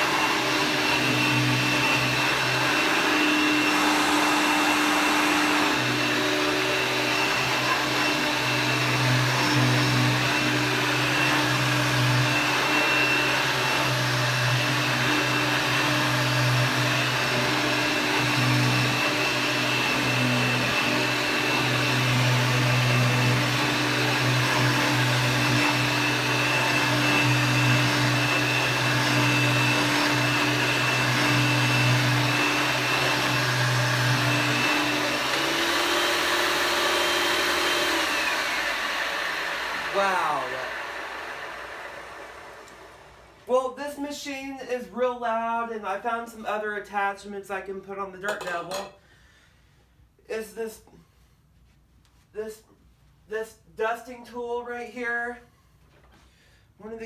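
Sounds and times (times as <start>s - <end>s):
vacuum cleaner running: 0.0s - 43.9s.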